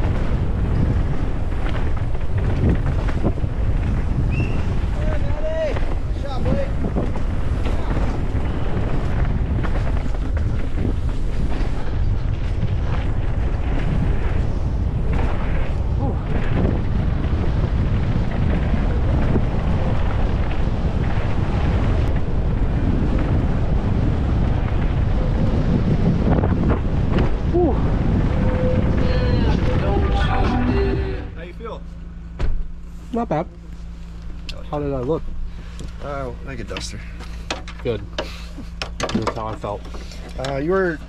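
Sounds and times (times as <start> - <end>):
bike clattering over rough ground: 0.0 - 30.8, 34.7 - 41.0
wind buffeting microphone: 0.0 - 32.8.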